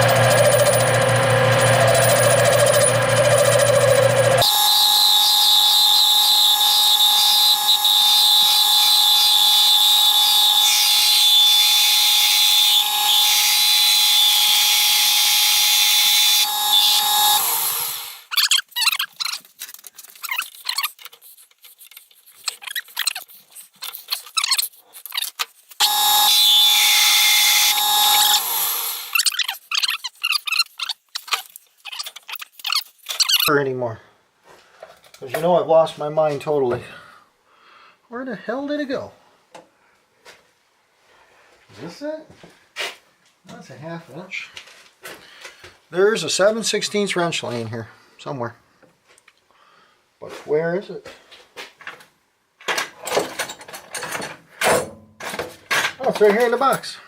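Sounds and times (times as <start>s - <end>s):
lathe spinning down: 0.0s - 10.8s
metal lathe whining: 0.0s - 18.2s, 25.8s - 29.1s.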